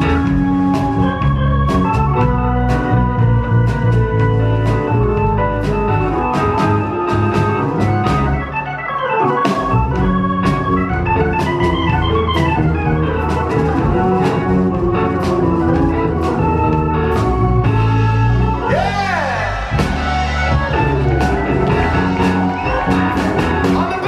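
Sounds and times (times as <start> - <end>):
bass line: 0.0 - 24.0
electric organ chords: 0.0 - 24.0
rock band playing live: 0.0 - 24.0
drums with cymbal hits: 9.5 - 24.0.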